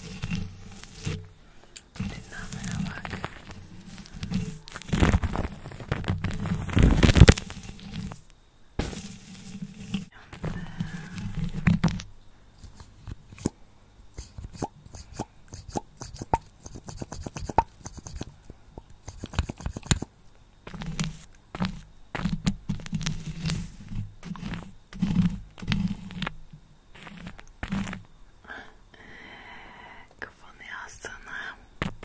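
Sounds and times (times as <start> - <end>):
lipstick rubbing on microphone: 2.0 - 5.0.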